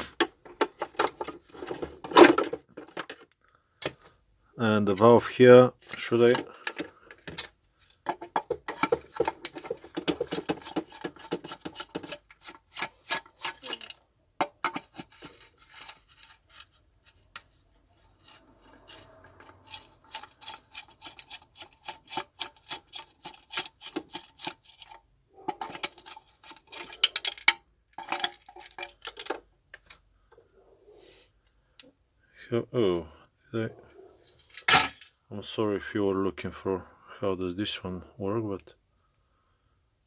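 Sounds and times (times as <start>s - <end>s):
plastic parts clicking and rattling: 0.0s - 4.1s, 4.8s - 30.1s, 34.4s - 35.2s.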